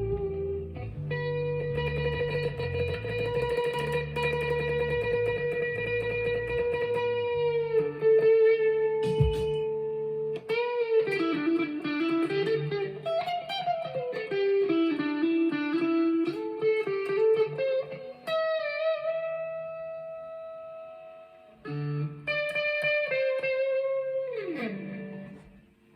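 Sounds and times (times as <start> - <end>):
electric guitar lead line: 0.0 - 25.9.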